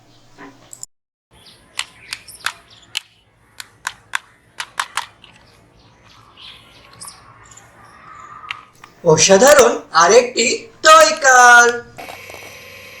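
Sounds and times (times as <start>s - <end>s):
plastic toy car clicking: 1.8s - 5.5s.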